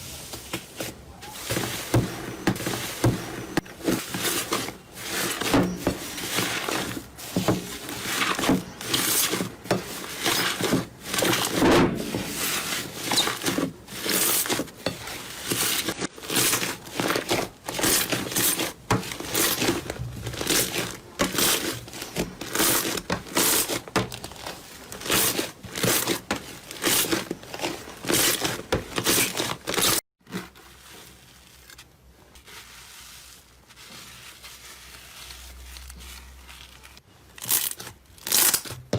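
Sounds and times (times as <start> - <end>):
soft slime squishing: 30.4 - 38.0.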